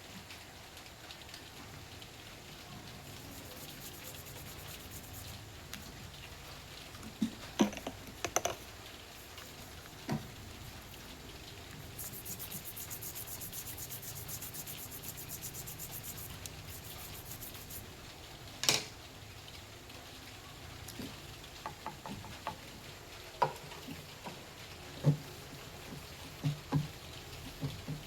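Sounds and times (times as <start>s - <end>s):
rapid scratchy ticking: 3.0s - 5.9s, 10.5s - 17.9s.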